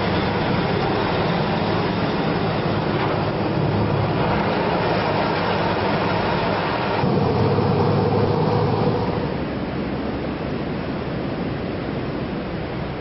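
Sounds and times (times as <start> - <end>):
road repair machinery engine: 0.0 - 9.6.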